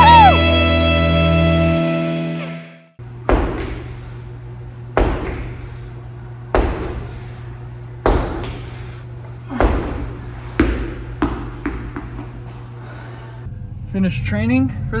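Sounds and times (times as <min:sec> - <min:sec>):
steady low hum: 0:03.0 - 0:15.0
heavy echoing thuds: 0:03.2 - 0:04.2, 0:04.9 - 0:05.9, 0:06.5 - 0:12.7.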